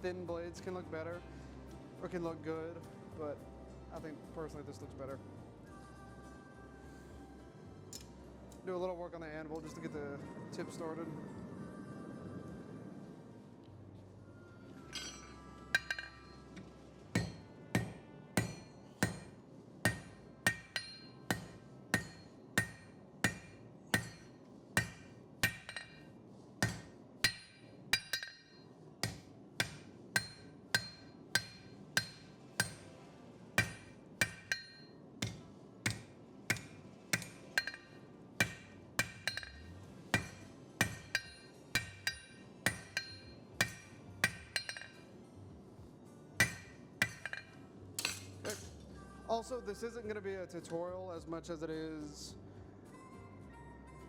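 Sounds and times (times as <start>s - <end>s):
hammer striking metal on anvil: 14.9s - 32.9s, 33.6s - 45.1s, 46.4s - 48.7s.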